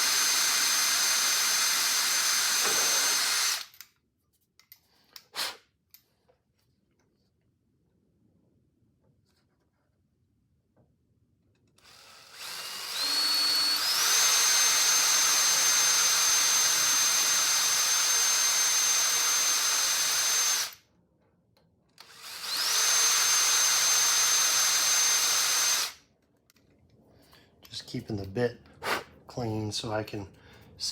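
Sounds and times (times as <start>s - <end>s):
electric drill drilling metal: 0.0s - 3.8s, 11.8s - 20.8s, 22.0s - 26.0s.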